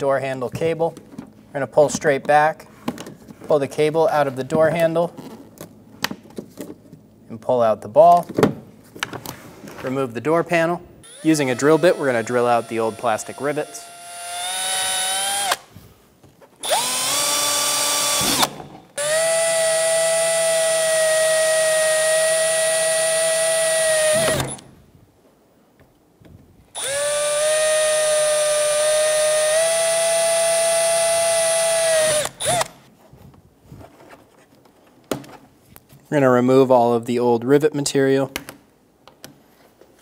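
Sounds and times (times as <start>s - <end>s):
power drill drilling plastic: 11.1s - 15.6s, 16.6s - 24.6s, 26.8s - 32.8s.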